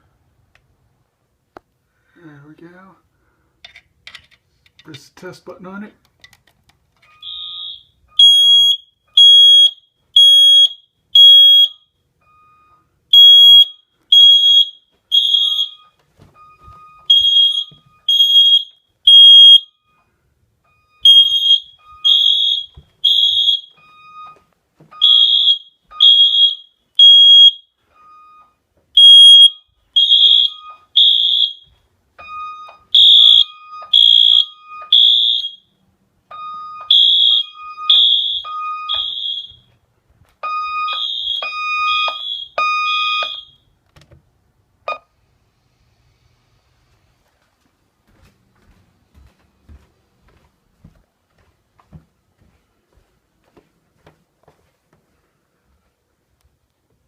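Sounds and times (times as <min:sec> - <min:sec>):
fire alarm high-pitched beeps: 0:07.1 - 0:39.7, 0:40.4 - 0:43.7
faint lower beep: 0:12.2 - 0:13.8, 0:15.6 - 0:18.1, 0:27.6 - 0:28.6, 0:32.2 - 0:33.9.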